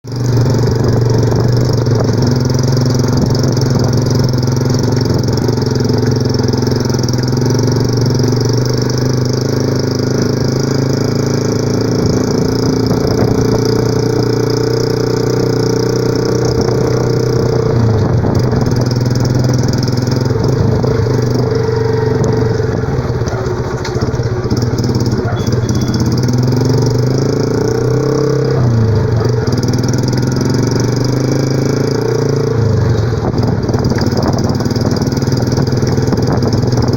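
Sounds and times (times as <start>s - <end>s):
motorcycle engine with rattly exhaust: 0.0s - 36.9s.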